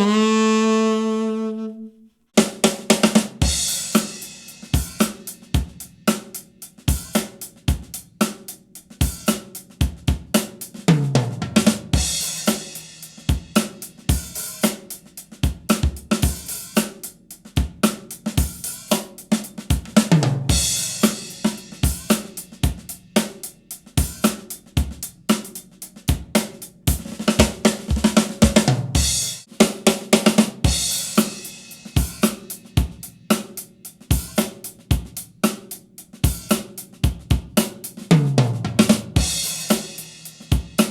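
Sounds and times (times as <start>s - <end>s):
drum fill: 0.0s - 1.7s, 36.2s - 40.9s
drum beat with cymbal crashes: 2.4s - 40.9s.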